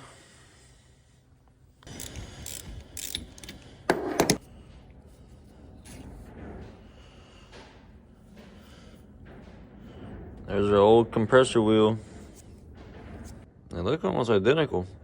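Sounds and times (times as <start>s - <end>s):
metal tools clanking and rattling: 1.9s - 4.4s.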